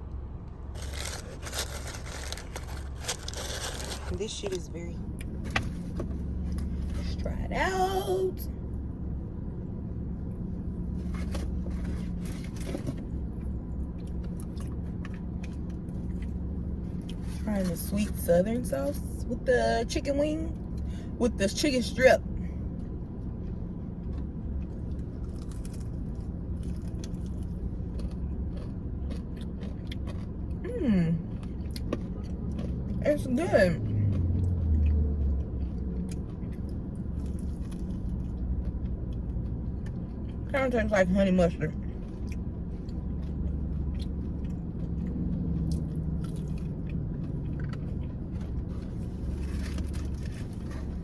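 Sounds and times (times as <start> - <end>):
low background hum: 0.0 - 51.0
steady low rumble: 0.0 - 51.0
chewing crunches and clicks: 0.5 - 7.1, 11.0 - 17.4, 22.8 - 33.0, 33.8 - 40.5, 41.8 - 51.0.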